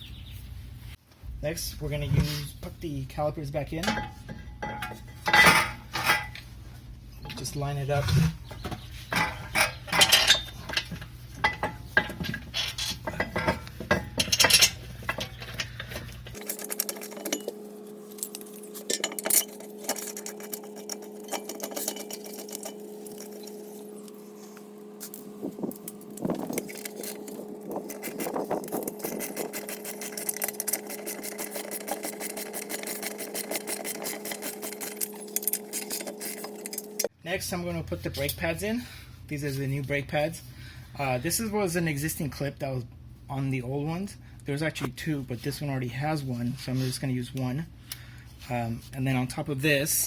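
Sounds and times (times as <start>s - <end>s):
metal clinking and knocking: 3.8s - 6.4s, 9.1s - 24.1s, 25.0s - 37.1s
steady low hum: 9.1s - 42.0s
socket wrench ratcheting: 18.2s - 23.6s, 25.0s - 37.1s.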